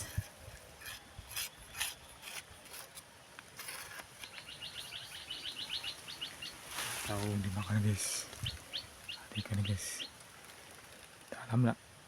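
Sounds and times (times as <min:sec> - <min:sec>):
bird chirping rapidly: 0:04.3 - 0:06.6
rustling and scuffing: 0:06.6 - 0:07.6.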